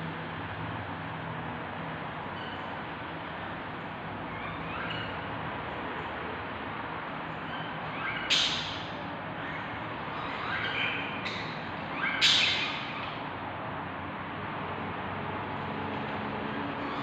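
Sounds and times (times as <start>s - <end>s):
nestlings squawking: 4.2s - 6.1s, 7.2s - 13.3s, 16.5s - 17.0s.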